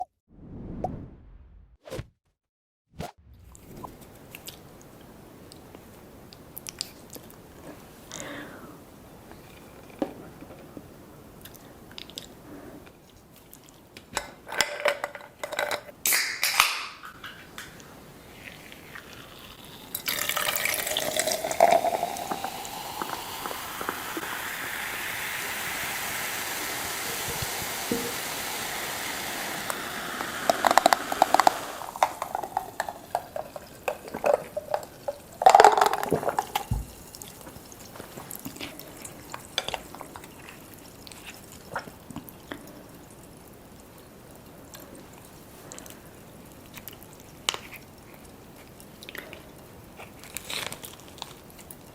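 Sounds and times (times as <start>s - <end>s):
food crackling while eaten: 3.6s - 8.5s, 11.3s - 25.3s, 26.0s - 51.9s
liquid pouring: 17.8s - 45.9s.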